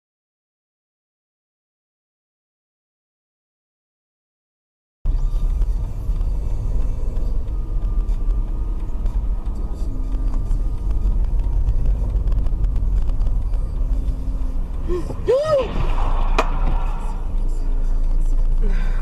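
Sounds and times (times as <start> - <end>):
car engine and road noise: 5.1 - 19.0.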